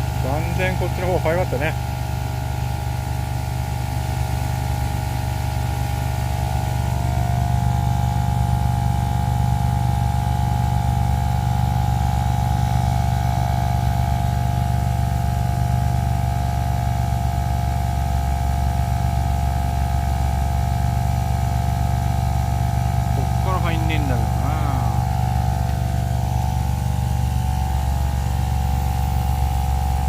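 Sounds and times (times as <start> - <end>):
small motor humming: 22.4 - 30.0
steady high whine: 22.4 - 30.0.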